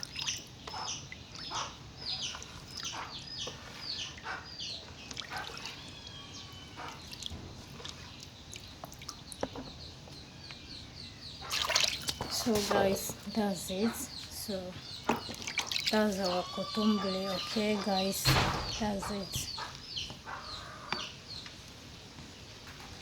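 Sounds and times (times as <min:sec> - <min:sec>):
chickens clucking: 0:00.7 - 0:08.2, 0:11.3 - 0:21.6.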